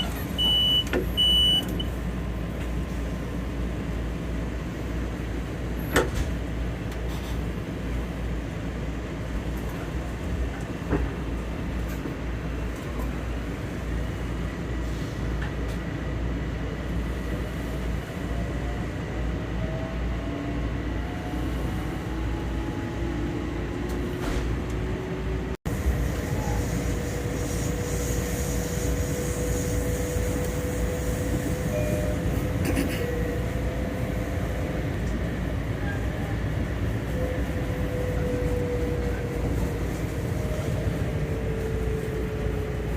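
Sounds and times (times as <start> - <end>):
train wheels rumbling on track: 0.0 - 42.9
train motor whine: 25.8 - 35.2.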